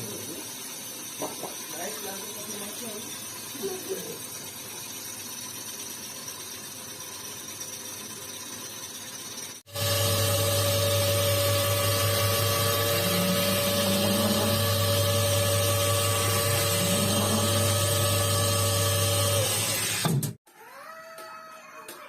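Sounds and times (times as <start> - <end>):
lathe humming and whining: 9.7 - 20.1.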